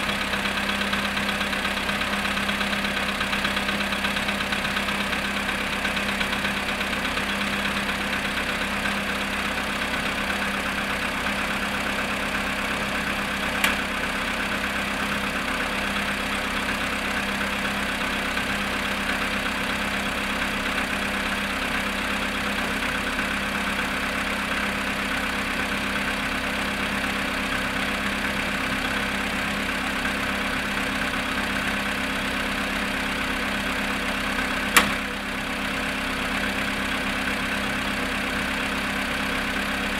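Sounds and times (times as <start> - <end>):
car engine idling with knock: 0.0 - 39.9
sharp click: 13.6 - 13.8, 34.8 - 35.0.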